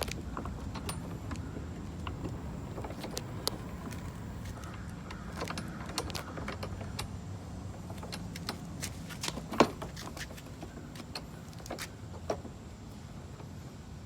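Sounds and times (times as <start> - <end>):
metal bolts clicking and rattling: 7.8 - 11.8.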